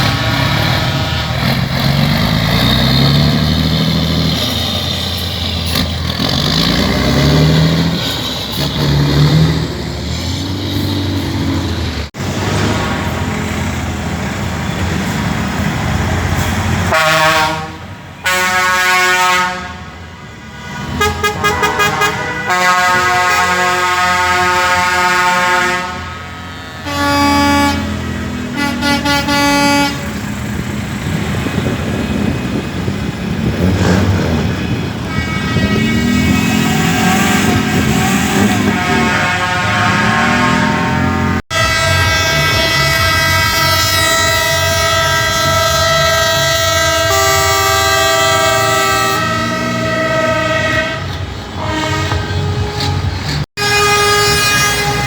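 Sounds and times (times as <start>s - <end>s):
truck air horns blasting: 0.0s - 11.8s, 16.2s - 30.5s, 34.8s - 55.0s.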